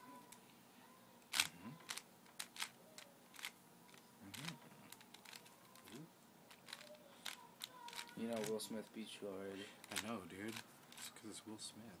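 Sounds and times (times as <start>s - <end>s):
puzzle cube clicking: 1.3s - 3.5s, 4.3s - 8.6s.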